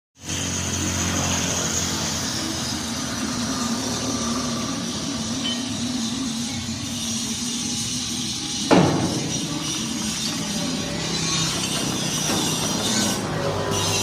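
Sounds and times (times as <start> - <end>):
machine running with low hum: 0.2 - 14.0.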